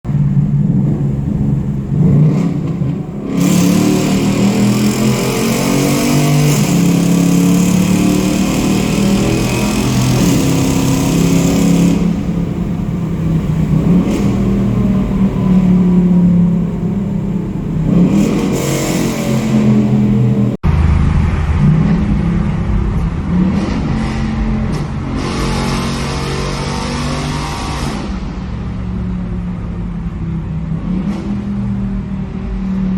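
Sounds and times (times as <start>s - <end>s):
car exhaust echoing in a tunnel: 0.1s - 32.9s.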